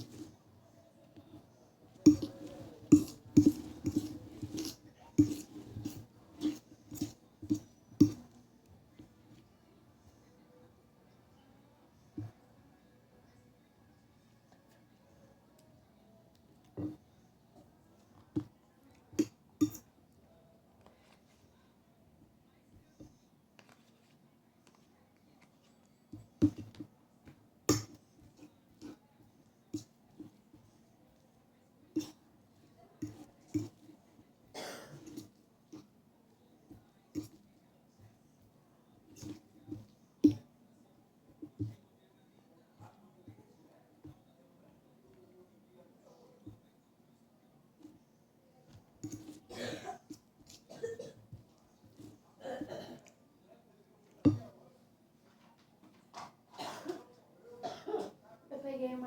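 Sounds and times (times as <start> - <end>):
cutlery clinking on a plate: 2.1 - 8.4, 19.2 - 19.9, 27.7 - 29.0, 49.0 - 51.2.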